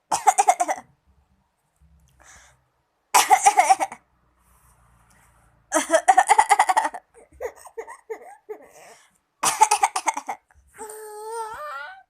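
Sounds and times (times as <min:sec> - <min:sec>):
person coughing: 0:09.4 - 0:10.4.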